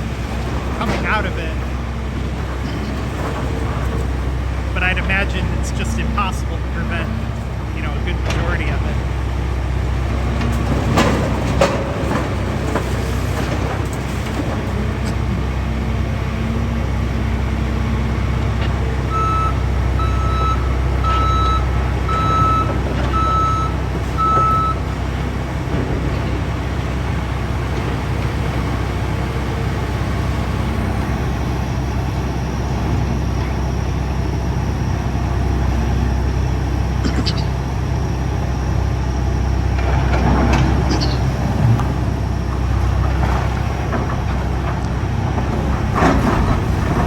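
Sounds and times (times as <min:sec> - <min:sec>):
diesel engines rumbling: 0:00.0 - 0:47.0
backup alarm beeping: 0:19.1 - 0:24.9.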